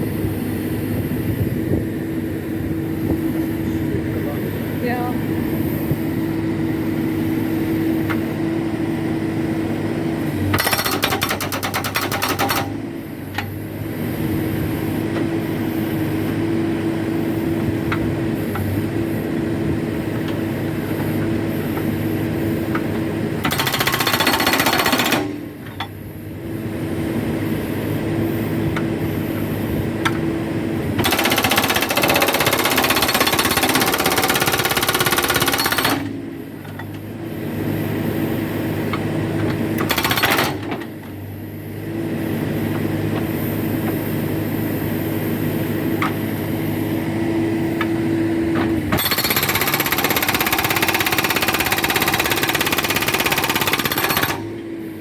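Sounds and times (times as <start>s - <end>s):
diesel engine running: 0.0s - 55.0s
hydraulic rock breaker hammering: 10.4s - 13.5s, 22.7s - 26.0s, 30.9s - 37.0s, 38.9s - 41.1s, 47.8s - 54.7s.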